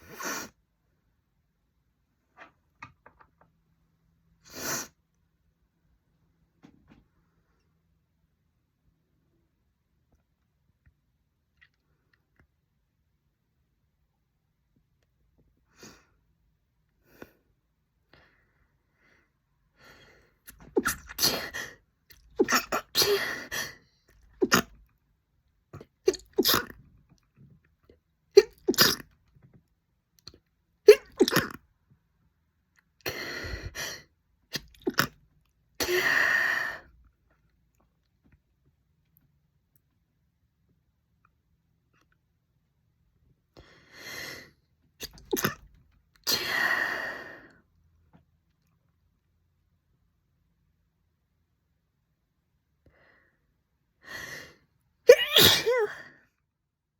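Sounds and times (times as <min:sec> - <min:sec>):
woman sneezing: 0:55.1 - 0:56.1.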